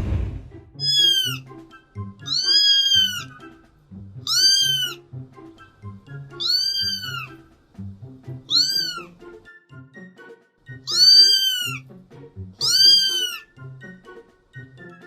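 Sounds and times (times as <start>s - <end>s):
background music: 0.0s - 15.0s
cat meowing: 0.8s - 1.5s, 2.2s - 3.4s, 4.2s - 5.0s, 6.3s - 7.4s, 8.5s - 9.2s, 10.8s - 11.8s, 12.6s - 13.6s.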